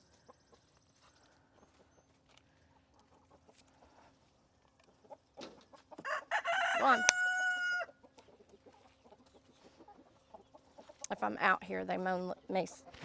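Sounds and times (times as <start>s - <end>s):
faint ticks and rustles: 0.0s - 6.0s.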